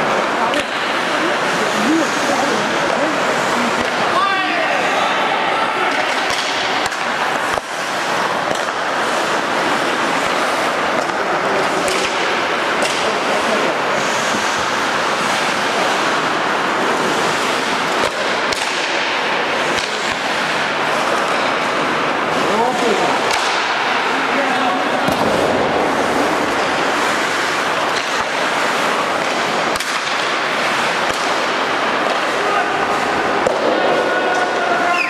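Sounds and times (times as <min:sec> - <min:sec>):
stick and puck clacks: 0:00.0 - 0:01.6, 0:02.7 - 0:04.1, 0:05.8 - 0:24.2, 0:25.0 - 0:35.0
skate blades hissing on ice: 0:00.9 - 0:04.0, 0:06.0 - 0:13.0, 0:13.9 - 0:19.0, 0:25.4 - 0:33.2.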